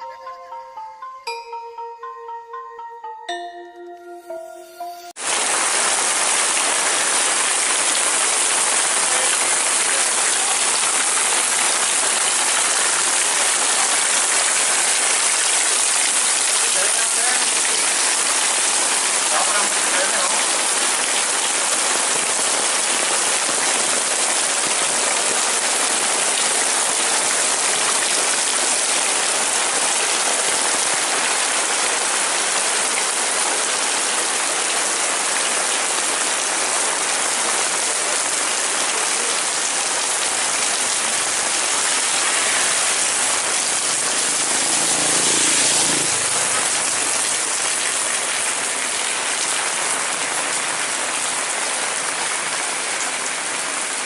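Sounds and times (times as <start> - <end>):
heavy rain falling: 5.2 - 54.0.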